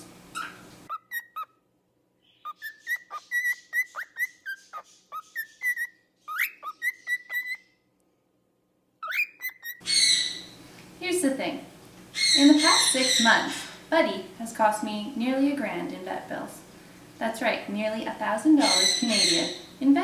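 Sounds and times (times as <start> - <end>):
parrot whistling and chirping: 0.3 - 1.6, 2.2 - 7.8, 9.0 - 10.6, 12.1 - 13.8.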